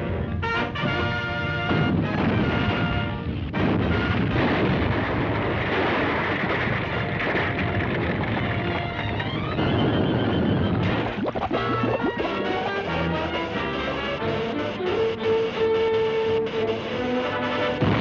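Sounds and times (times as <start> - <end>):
orchestral cartoon music with brass: 0.0 - 4.7, 10.7 - 18.0
loud rumbling crash: 3.4 - 11.8, 17.8 - 18.0.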